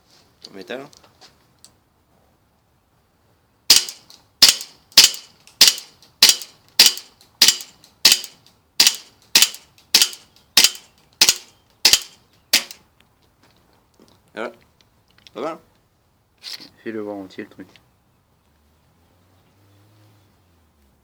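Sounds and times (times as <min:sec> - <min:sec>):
airsoft pistol shots: 0:03.7 - 0:12.8.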